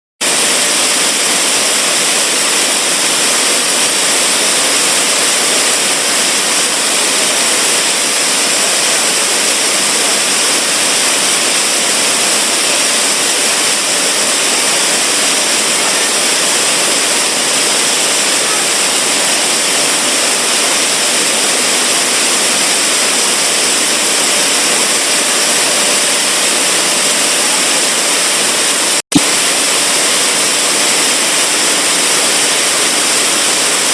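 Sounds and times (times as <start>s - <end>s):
milling machinery running: 0.2s - 33.9s.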